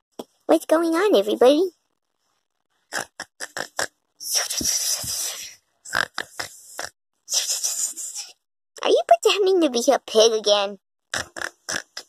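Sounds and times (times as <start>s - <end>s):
person snorting like a pig: 2.9s - 8.2s, 11.1s - 12.0s.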